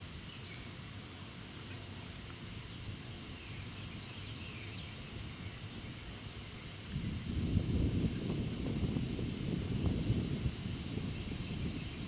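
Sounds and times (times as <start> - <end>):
bird chirps: 2.7 - 6.8.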